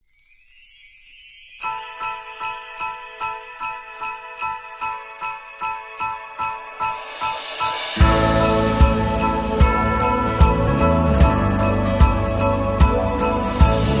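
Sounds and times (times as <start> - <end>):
sleigh bells jingling: 0.0 - 14.0
held music notes: 4.7 - 14.0.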